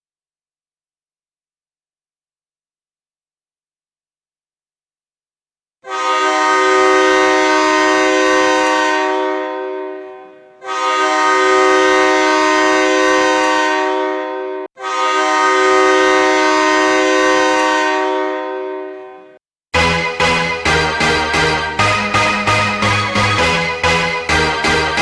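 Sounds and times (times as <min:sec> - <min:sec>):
multi-tone air horn blasts: 0:05.8 - 0:25.0.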